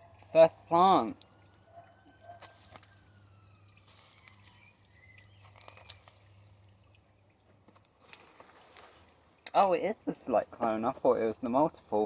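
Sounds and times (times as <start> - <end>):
packaging rustling and crinkling: 1.9 - 6.6.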